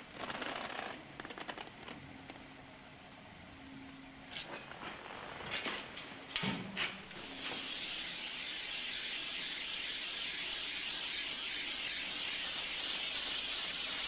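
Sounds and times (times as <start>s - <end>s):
gas torch flame hissing: 7.0s - 14.0s.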